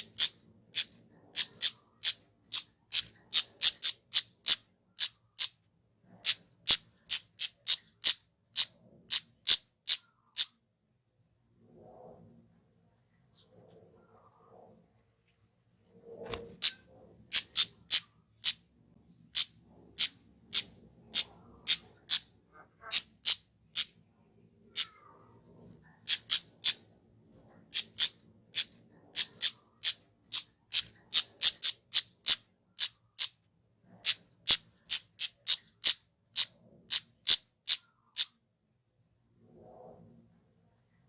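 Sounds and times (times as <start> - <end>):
bird giving high sharp chips: 0.0 - 2.2, 2.9 - 5.5, 17.4 - 18.6, 26.1 - 26.8, 27.8 - 30.0, 30.8 - 33.3, 34.1 - 38.3.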